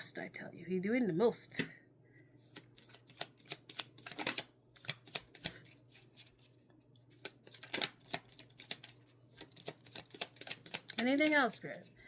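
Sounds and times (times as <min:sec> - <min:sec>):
cards being shuffled: 0:02.5 - 0:12.0.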